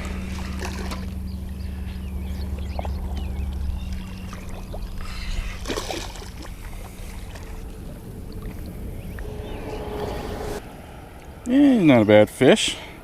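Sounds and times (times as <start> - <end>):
water splashing and sloshing: 0.0 - 11.5
low steady hum: 0.0 - 11.8.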